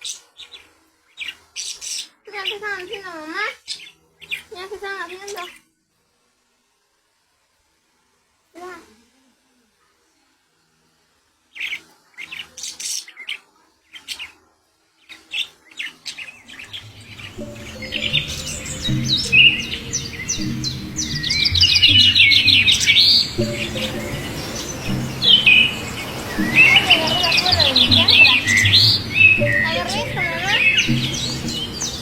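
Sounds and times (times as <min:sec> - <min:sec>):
low steady background sound: 0:00.0 - 0:32.0
budgerigars chirping: 0:15.1 - 0:32.0.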